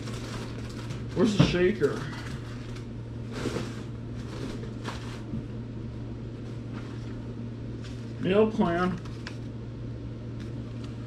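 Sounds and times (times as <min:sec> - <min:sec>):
plastic packets rustling: 0:00.0 - 0:02.9
low electrical hum: 0:00.0 - 0:11.0.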